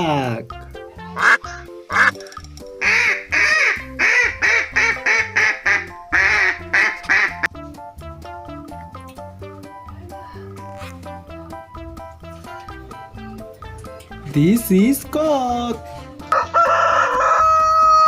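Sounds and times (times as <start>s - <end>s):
children's background music: 0.0s - 18.0s
duck quacking: 1.2s - 2.2s, 2.8s - 7.5s.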